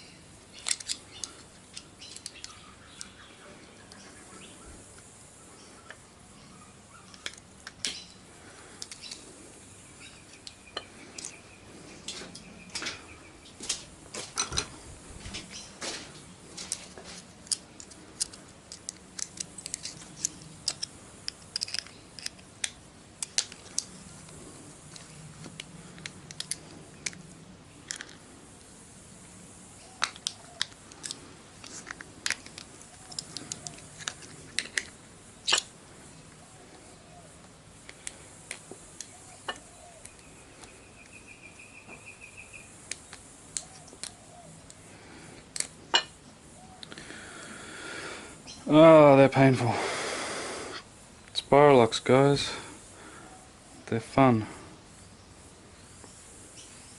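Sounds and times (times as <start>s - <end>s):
small metal clicks and scrapes: 0.6s - 3.1s, 16.6s - 28.7s, 30.0s - 35.7s.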